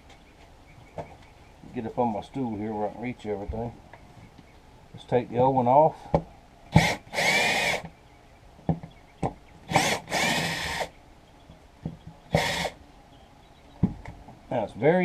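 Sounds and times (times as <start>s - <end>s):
cordless drill driving screws: 6.7s - 7.9s, 9.7s - 10.9s, 12.3s - 12.8s.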